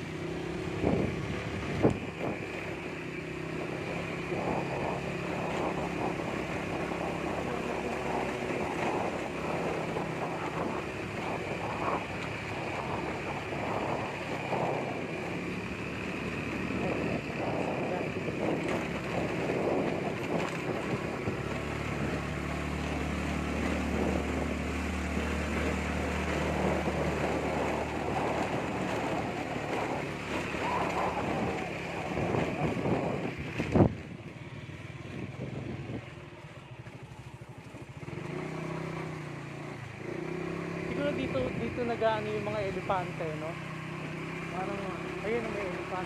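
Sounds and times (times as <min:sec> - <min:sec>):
wind noise on microphone: 0:00.0 - 0:15.5, 0:16.4 - 0:36.3
motorbike engine running: 0:00.0 - 0:46.0.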